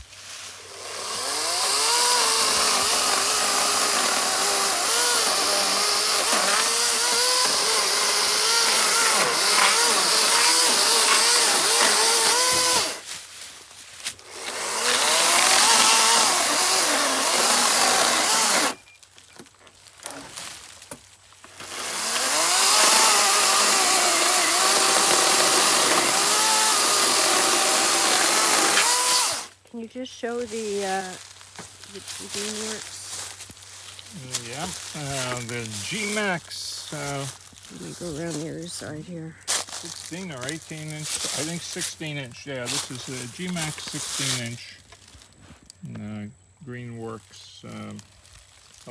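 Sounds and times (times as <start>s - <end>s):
electric chainsaw cutting wood: 0.6s - 13.1s, 14.2s - 18.8s, 21.5s - 29.6s, 32.0s - 33.4s, 34.2s - 37.3s, 40.0s - 41.8s.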